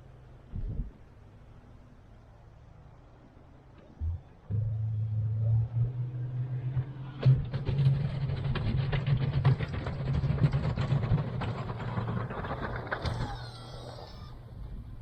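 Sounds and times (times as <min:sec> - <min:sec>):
pickup truck engine humming: 0:01.2 - 0:15.0
clattering knocks: 0:06.8 - 0:14.0.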